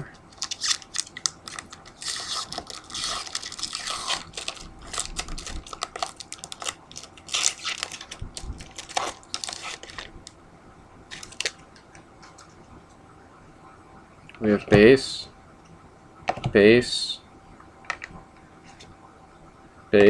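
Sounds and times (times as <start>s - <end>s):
card pack wrapper crinkling: 0.3s - 10.4s, 11.1s - 11.6s.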